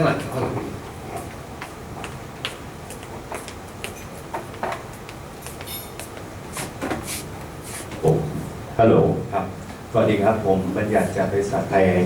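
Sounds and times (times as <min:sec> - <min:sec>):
room noise: 0:00.0 - 0:12.0.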